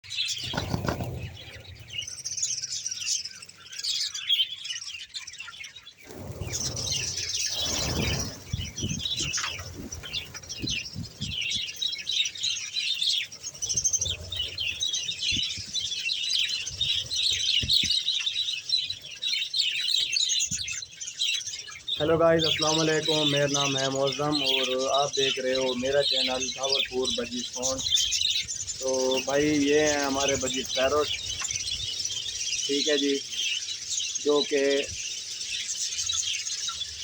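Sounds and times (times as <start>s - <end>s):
budgerigars chirping and warbling: 0.1s - 37.0s.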